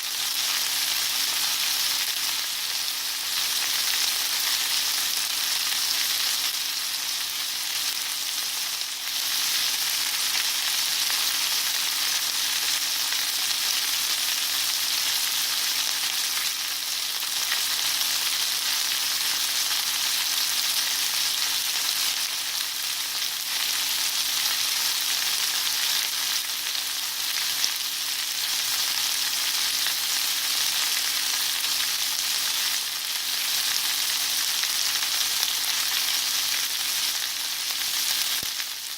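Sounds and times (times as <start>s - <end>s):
steak sizzling in a pan: 0.0s - 38.9s.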